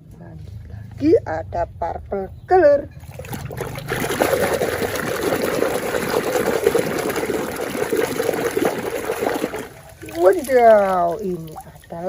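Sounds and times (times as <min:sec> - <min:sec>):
running water splashing: 0:03.1 - 0:12.0.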